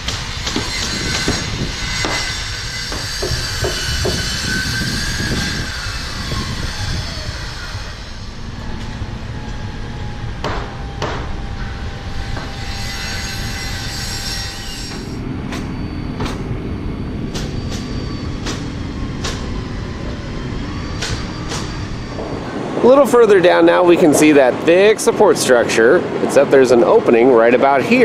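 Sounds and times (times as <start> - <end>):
low rumble of machinery or wind: 0.0 - 28.0
hammers nailing wood: 2.9 - 4.4, 10.4 - 11.3.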